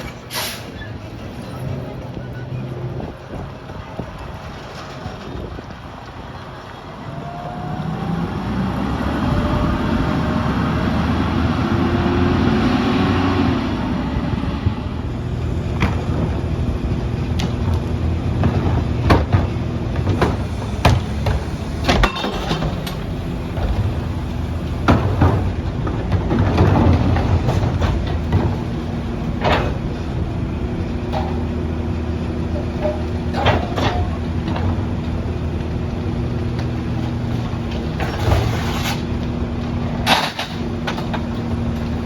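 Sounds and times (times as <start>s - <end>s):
garbage truck engine running: 0.0s - 42.0s
metallic clanks and bangs: 17.4s - 35.1s, 40.0s - 42.0s.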